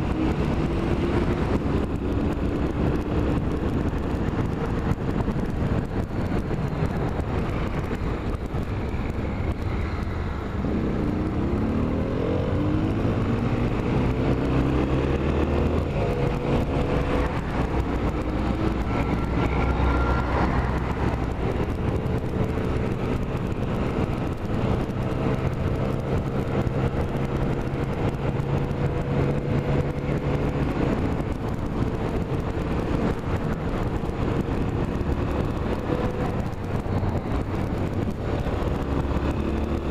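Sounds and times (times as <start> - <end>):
road noise: 0.0 - 39.9
vehicle engine: 0.0 - 39.9.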